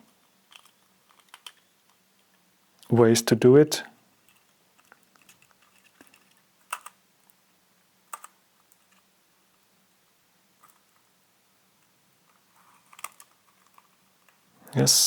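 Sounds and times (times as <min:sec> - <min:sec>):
small parts clicking and rattling: 0:00.2 - 0:02.4, 0:04.2 - 0:07.4, 0:08.1 - 0:09.1, 0:10.6 - 0:11.1, 0:11.8 - 0:14.5.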